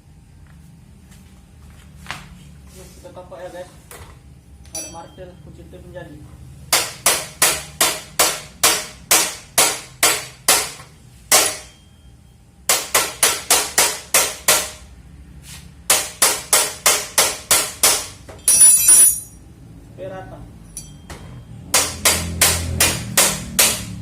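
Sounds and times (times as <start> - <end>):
harsh ringing noise: 4.7 - 6.0, 11.2 - 13.2, 18.4 - 19.6, 20.6 - 22.0.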